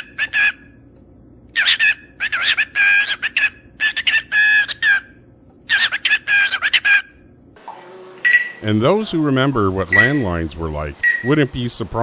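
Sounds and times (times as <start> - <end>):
parakeet chattering: 0.0 - 0.8, 1.5 - 7.2.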